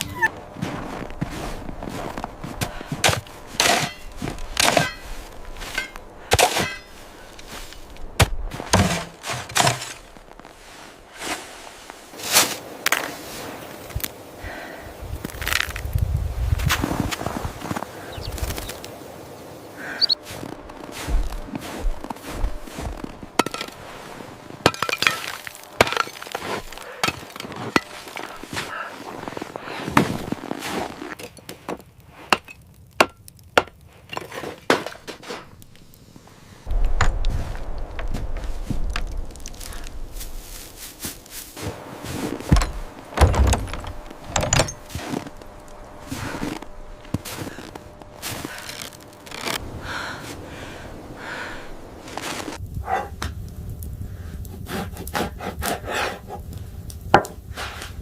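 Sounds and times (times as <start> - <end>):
irregular knocks and crunching thuds: 0.4 - 12.0, 20.1 - 35.7, 36.7 - 50.1.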